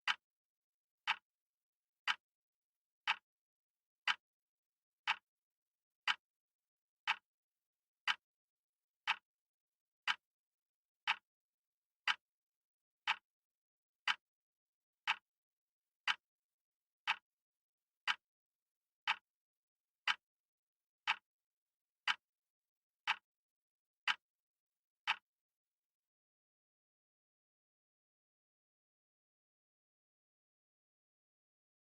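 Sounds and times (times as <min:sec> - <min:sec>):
clock ticking: 0:00.0 - 0:00.2, 0:01.0 - 0:01.2, 0:02.0 - 0:02.2, 0:03.0 - 0:03.3, 0:04.0 - 0:04.2, 0:05.0 - 0:05.2, 0:06.0 - 0:06.2, 0:07.0 - 0:07.3, 0:08.0 - 0:08.2, 0:09.0 - 0:09.3, 0:10.0 - 0:10.2, 0:11.0 - 0:11.3, 0:12.0 - 0:12.2, 0:13.0 - 0:13.3, 0:14.0 - 0:14.3, 0:15.0 - 0:15.3, 0:16.0 - 0:16.2, 0:17.0 - 0:17.3, 0:18.0 - 0:18.2, 0:19.0 - 0:19.3, 0:20.0 - 0:20.2, 0:21.0 - 0:21.3, 0:22.0 - 0:22.2, 0:23.0 - 0:23.3, 0:24.0 - 0:24.2, 0:25.0 - 0:25.3.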